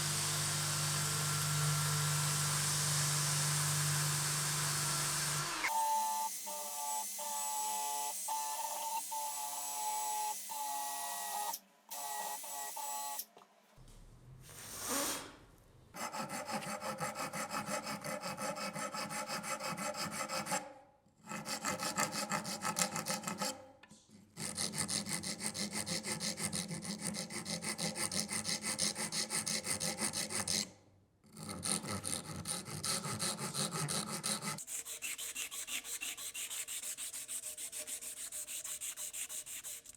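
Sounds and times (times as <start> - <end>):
small power tool whining: 0.0 - 13.2.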